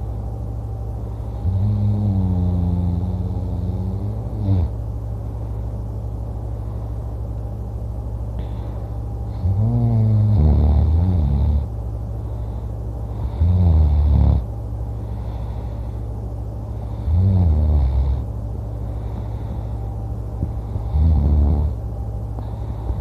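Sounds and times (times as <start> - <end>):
steady low hum: 0.0 - 23.0
person snoring: 1.4 - 4.7, 9.4 - 11.7, 13.2 - 14.4, 16.8 - 18.2, 20.7 - 21.8.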